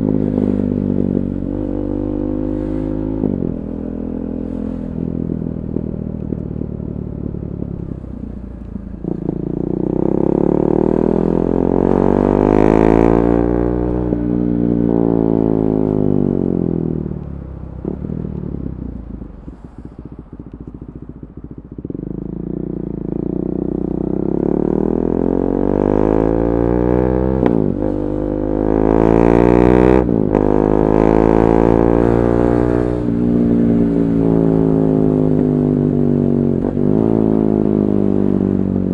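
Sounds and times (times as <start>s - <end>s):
motorcycle engine revving: 0.0s - 38.9s
exhaust cracks: 17.2s - 22.4s.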